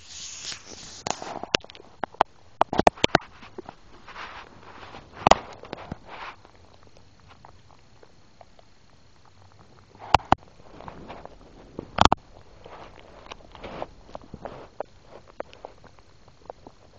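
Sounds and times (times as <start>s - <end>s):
soft rubbing: 0.0s - 1.5s, 3.2s - 6.6s, 10.0s - 16.0s.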